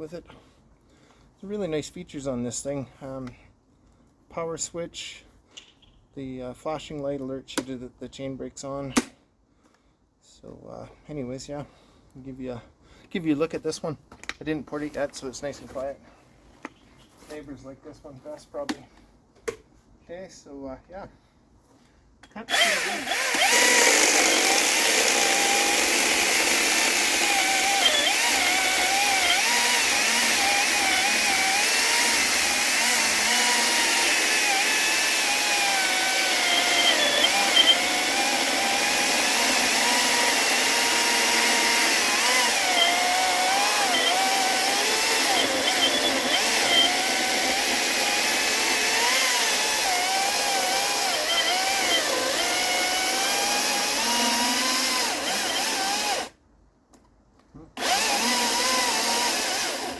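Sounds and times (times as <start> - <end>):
chainsaw cutting wood: 22.5 - 56.4, 57.8 - 59.9.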